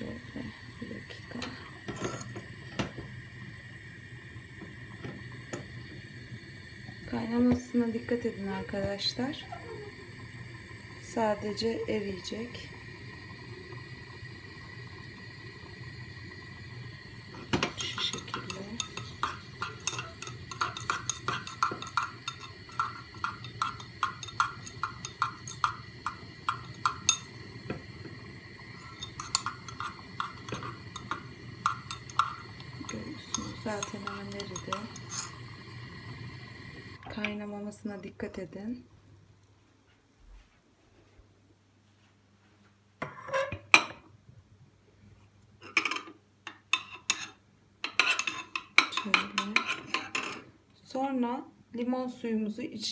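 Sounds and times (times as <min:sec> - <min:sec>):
spoon clinking in small pot: 0:17.6 - 0:27.4, 0:28.7 - 0:35.4, 0:45.6 - 0:50.4.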